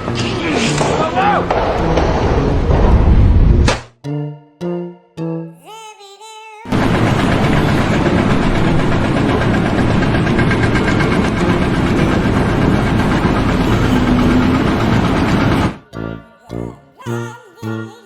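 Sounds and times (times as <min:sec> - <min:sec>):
loud heavy machine running: 0:00.0 - 0:03.5, 0:06.7 - 0:15.8.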